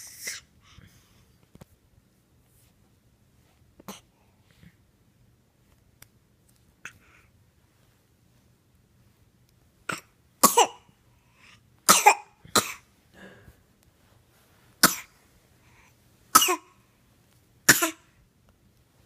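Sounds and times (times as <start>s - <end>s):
child coughing: 9.9s - 10.9s, 11.9s - 13.5s, 14.8s - 15.1s, 16.3s - 16.7s, 17.7s - 18.1s.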